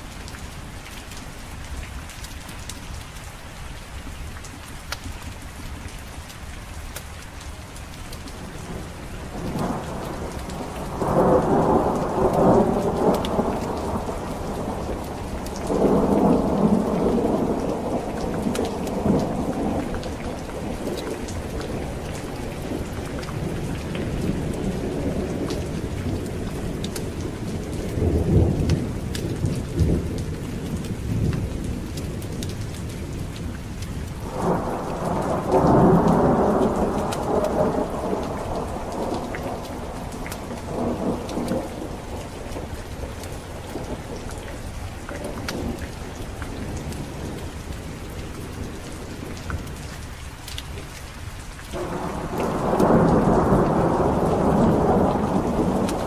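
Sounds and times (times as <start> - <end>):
heavy rain hissing: 8.4 - 31.3, 34.1 - 56.0
rolling thunder: 9.3 - 32.4, 34.2 - 45.9, 51.8 - 56.0.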